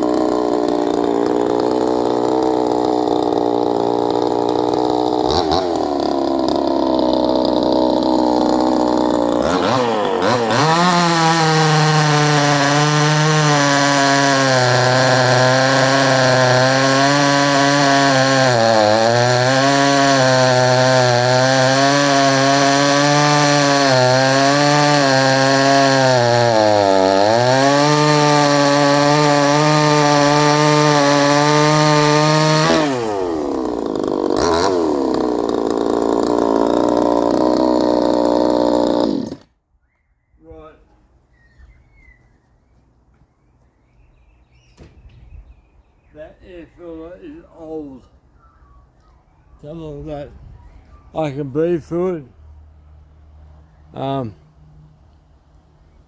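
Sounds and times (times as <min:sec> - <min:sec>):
chainsaw cutting a log: 0:00.0 - 0:39.5.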